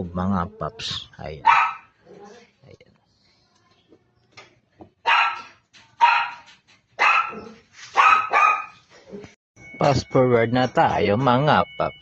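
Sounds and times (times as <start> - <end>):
dog barking: 1.4 - 2.0, 5.0 - 8.8.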